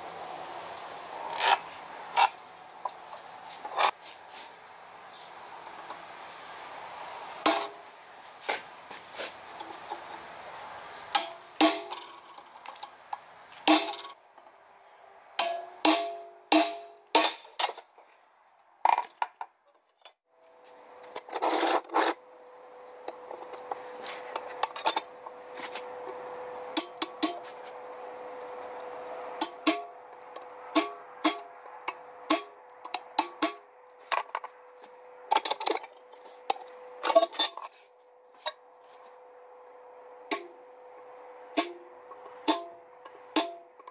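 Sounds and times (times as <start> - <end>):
hammer striking steel on anvil: 11.2 - 12.0, 13.6 - 14.1, 15.4 - 17.6, 29.4 - 30.0, 30.7 - 31.6, 32.3 - 33.7, 40.3 - 40.6, 41.5 - 43.7.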